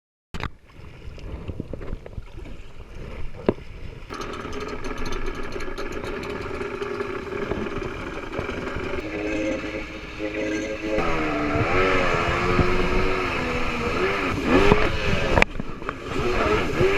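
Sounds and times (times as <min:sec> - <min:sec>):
wind and water rumble: 0:00.4 - 0:16.9
jet ski engine revving: 0:04.1 - 0:16.9.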